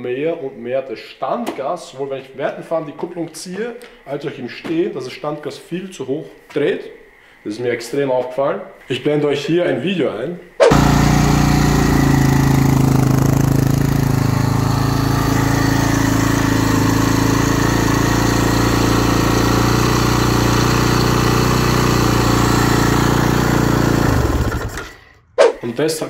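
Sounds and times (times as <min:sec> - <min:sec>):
motorcycle engine running: 0:10.7 - 0:25.3.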